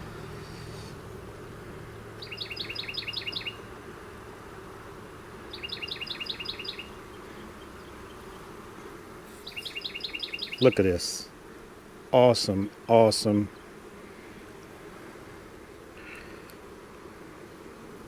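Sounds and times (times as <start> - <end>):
honeybees humming: 0.0 - 18.0
songbird trilling: 2.2 - 3.6, 5.5 - 8.4, 9.5 - 10.8.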